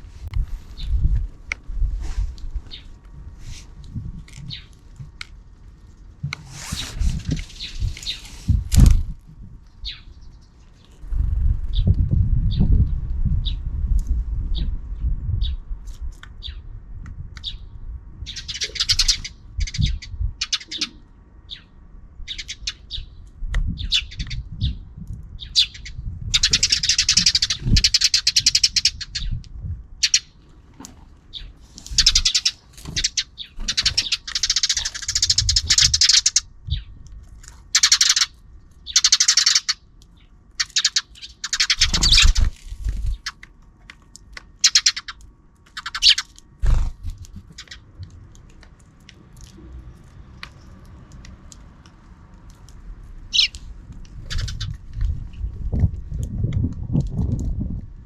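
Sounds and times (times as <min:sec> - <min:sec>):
sparrows chirping: 0:02.6 - 0:03.0, 0:04.4 - 0:04.8, 0:07.2 - 0:08.6, 0:09.7 - 0:11.9, 0:16.4 - 0:16.7, 0:17.4 - 0:29.4, 0:30.0 - 0:30.4, 0:31.2 - 0:37.0, 0:37.7 - 0:43.4, 0:44.6 - 0:48.0, 0:53.2 - 0:55.0.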